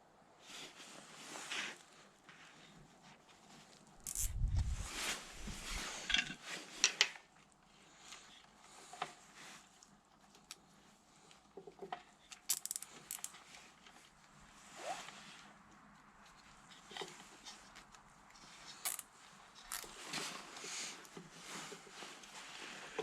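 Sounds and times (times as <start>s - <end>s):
tools clicking and rattling: 4.0s - 4.5s, 12.3s - 13.5s, 18.8s - 19.1s.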